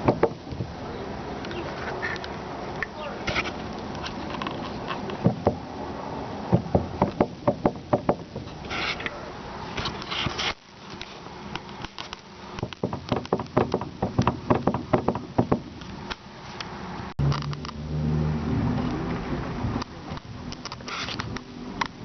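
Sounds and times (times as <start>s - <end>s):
steering rack knocking: 12.6s - 15.6s.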